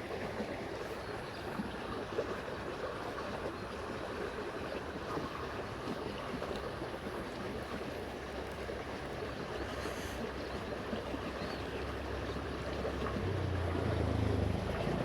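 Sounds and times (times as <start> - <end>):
low engine hum: 5.2 - 15.0.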